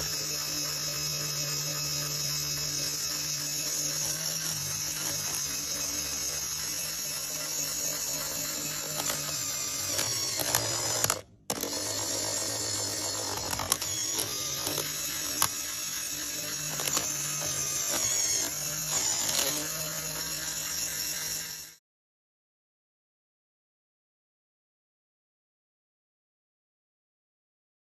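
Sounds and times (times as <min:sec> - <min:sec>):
gear clicks: 0:00.0 - 0:21.7
toy gears grinding with motor whir: 0:00.0 - 0:21.8.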